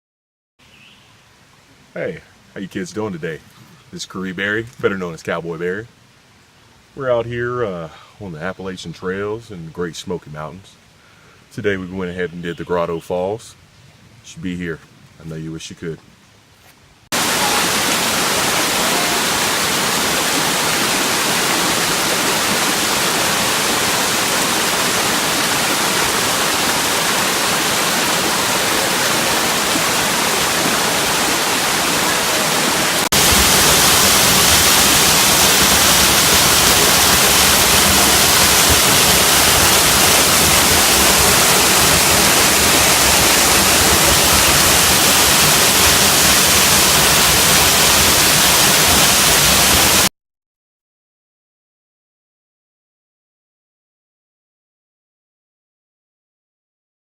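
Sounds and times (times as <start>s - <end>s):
waterfall rushing: 17.1s - 50.1s.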